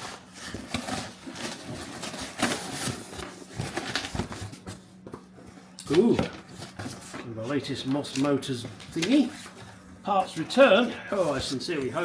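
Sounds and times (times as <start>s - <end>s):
packing material rustling: 0.0s - 4.8s, 5.9s - 9.6s.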